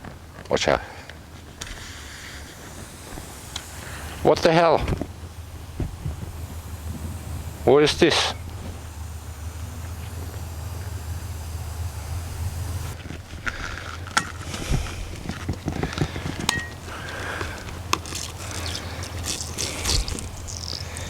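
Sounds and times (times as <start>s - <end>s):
low steady rumble: 0.0s - 21.0s
metal tool scraping tire: 0.6s - 11.2s.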